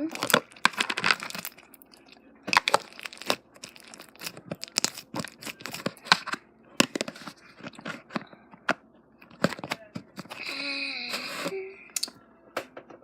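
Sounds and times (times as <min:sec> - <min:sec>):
slime crackling and popping: 0:00.0 - 0:07.1.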